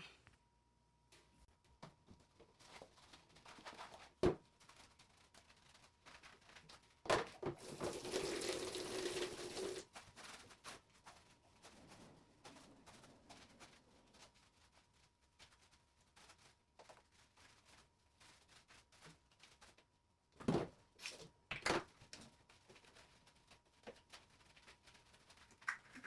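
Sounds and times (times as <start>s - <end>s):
running tap water: 7.6s - 9.9s.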